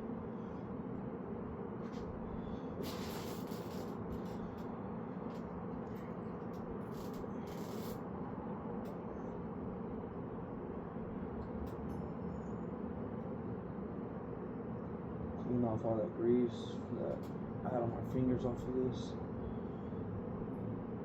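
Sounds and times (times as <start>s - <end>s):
short rustling scrapes: 2.8s - 4.3s.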